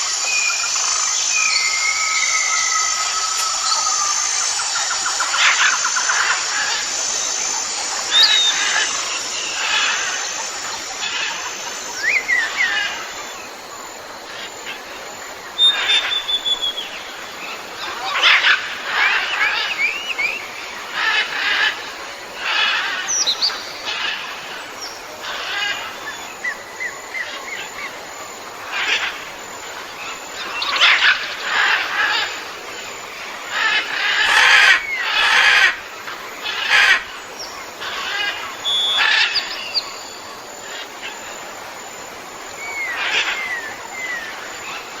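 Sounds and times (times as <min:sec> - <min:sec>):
background hiss: 0:00.0 - 0:45.0
birds chirping and whistling: 0:00.2 - 0:13.0, 0:15.6 - 0:17.0, 0:38.6 - 0:40.2, 0:42.6 - 0:44.4.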